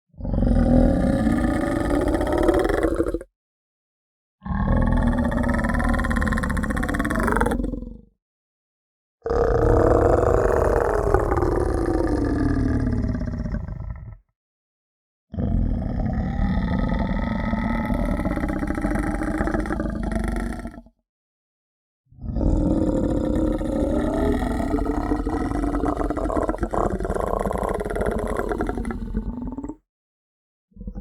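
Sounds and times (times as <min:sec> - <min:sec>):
person making guttural sounds: 0:24.0 - 0:29.4.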